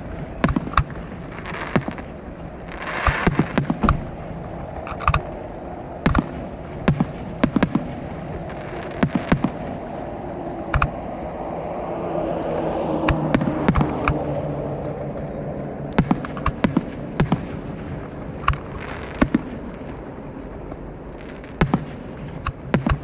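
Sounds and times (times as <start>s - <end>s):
firework shells bursting: 0.0s - 11.0s
fireworks rumble and hiss: 0.0s - 23.0s.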